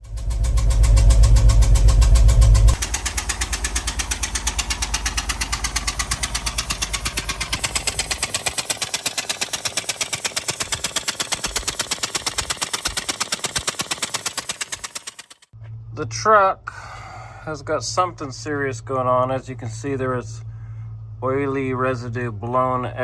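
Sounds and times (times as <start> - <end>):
rhythmic puffing tick: 0.0 - 15.5
truck engine idling: 0.0 - 23.0.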